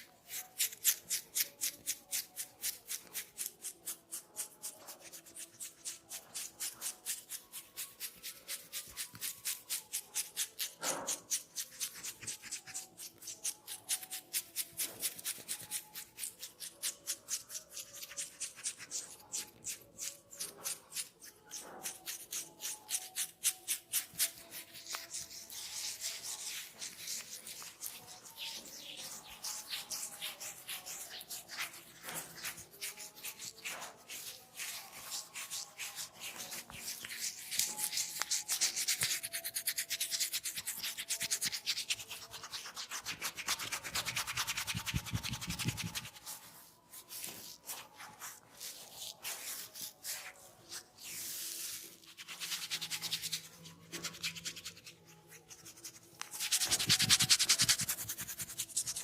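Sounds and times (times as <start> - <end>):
hands rubbing scalp through hair: 21.5 - 59.0.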